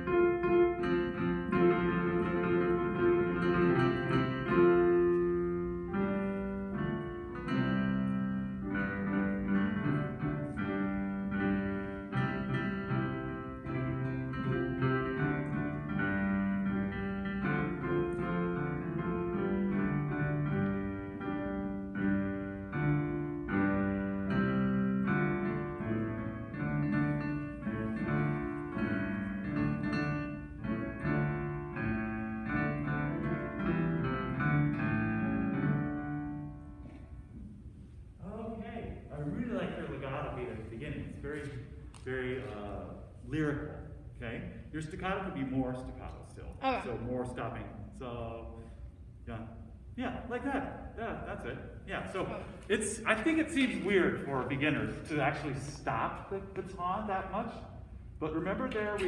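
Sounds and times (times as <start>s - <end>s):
instrumental keyboard music: 0.0s - 36.9s.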